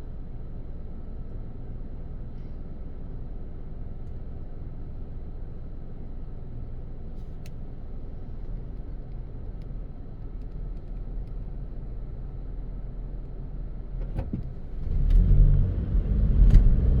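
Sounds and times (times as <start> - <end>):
car road rumble: 7.1 - 17.0.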